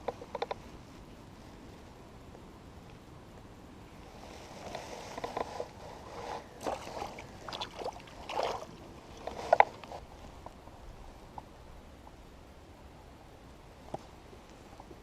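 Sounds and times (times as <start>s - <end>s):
water splashing and sloshing: 4.2s - 10.2s.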